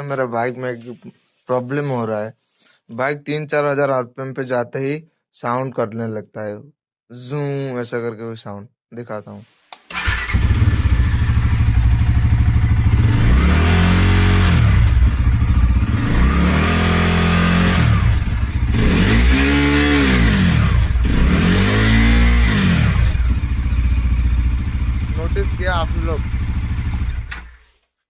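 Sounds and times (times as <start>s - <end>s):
motorcycle engine revving: 9.9s - 27.6s.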